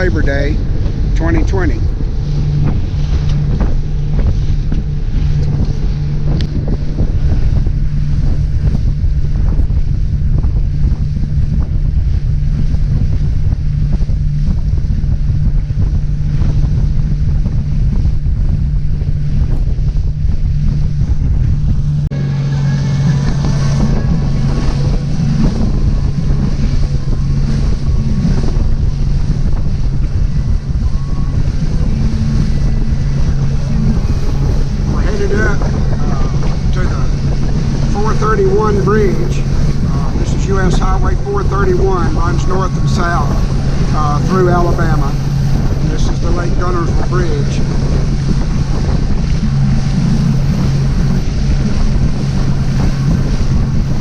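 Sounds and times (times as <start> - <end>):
boat engine humming: 0.0 - 54.0
water rushing past hull: 0.0 - 54.0
wind buffeting microphone: 0.0 - 54.0.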